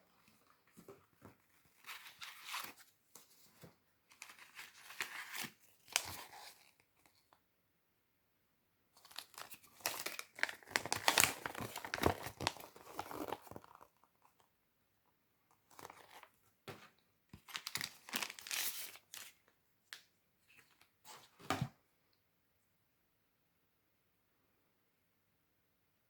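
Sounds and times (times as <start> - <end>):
packaging tearing and crinkling: 9.1 - 13.9, 17.5 - 19.3.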